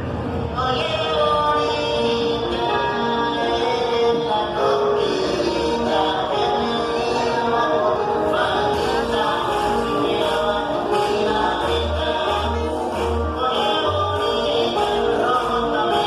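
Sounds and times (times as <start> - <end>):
latin dance music with singing: 0.0 - 16.0
pulsing bass beat: 8.8 - 16.0.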